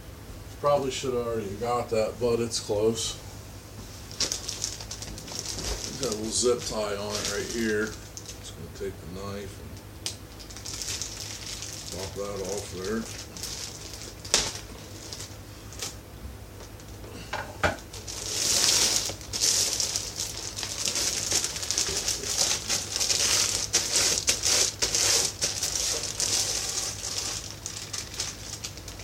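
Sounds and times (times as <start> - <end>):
plastic wrapping crinkling: 4.0 - 8.5, 10.0 - 16.0, 17.8 - 29.0
packaging rustling: 4.1 - 8.5, 10.2 - 16.0, 17.8 - 29.0.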